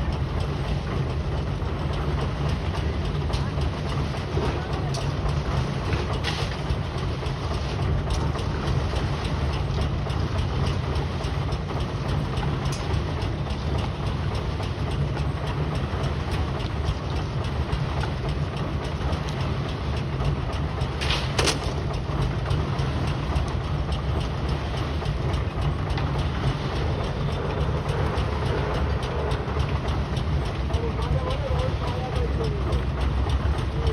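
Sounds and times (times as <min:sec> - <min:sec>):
heavy machinery engine rumbling: 0:00.0 - 0:33.9.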